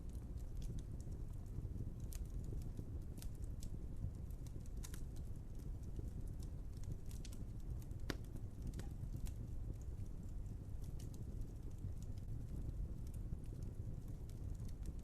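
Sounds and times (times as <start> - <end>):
wood fire crackling and popping: 0.0 - 15.0.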